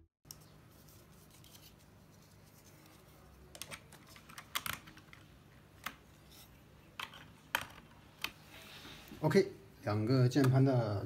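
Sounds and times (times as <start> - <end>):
keycaps clicking onto keyboard: 3.6 - 5.2.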